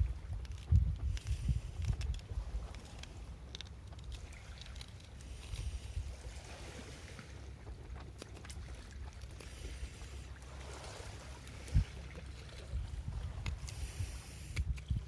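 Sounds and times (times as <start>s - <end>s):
wind rumbling on microphone: 0.0s - 15.0s.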